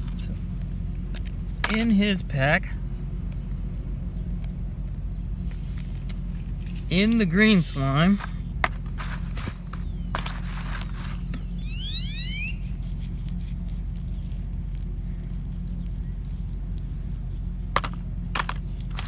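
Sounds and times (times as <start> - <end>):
steady low hum: 0.0 - 19.0
rising squeak: 9.8 - 13.3.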